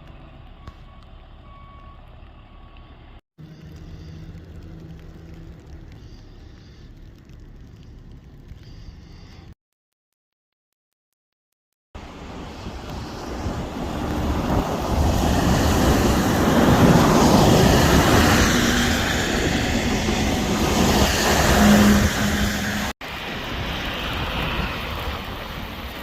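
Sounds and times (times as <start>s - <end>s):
faint engine hum: 0.0s - 9.5s
traffic rushing hiss: 12.0s - 26.0s.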